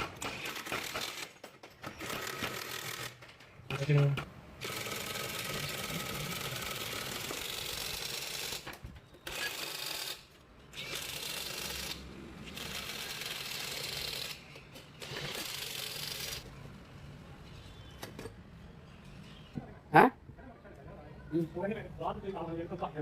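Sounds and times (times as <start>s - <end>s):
power tool rattling: 0.0s - 16.4s.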